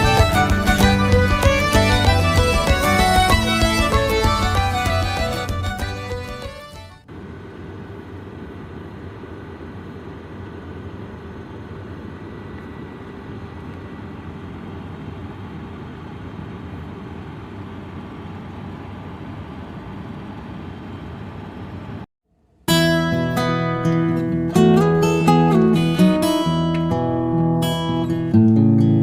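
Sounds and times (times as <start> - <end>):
air conditioning blower whirring: 0.0 - 22.1.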